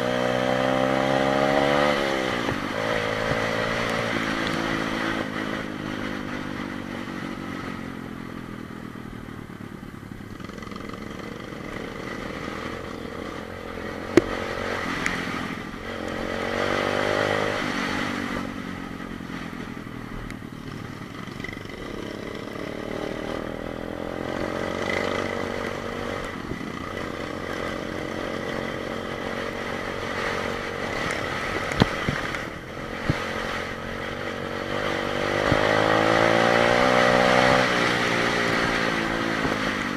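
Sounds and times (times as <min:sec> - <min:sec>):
motorbike engine revving: 0:00.0 - 0:08.5, 0:09.6 - 0:39.9.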